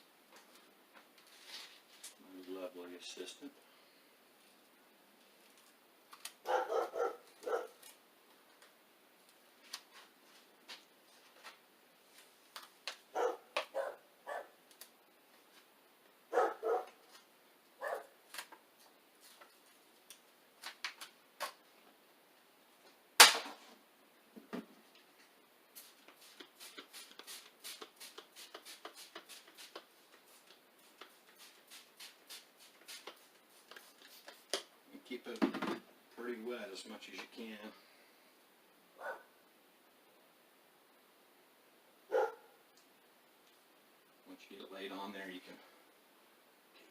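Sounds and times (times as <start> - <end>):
dog barking: 6.4 - 7.8, 13.1 - 14.6, 16.3 - 17.0, 17.8 - 18.1, 39.0 - 39.3, 42.1 - 42.6.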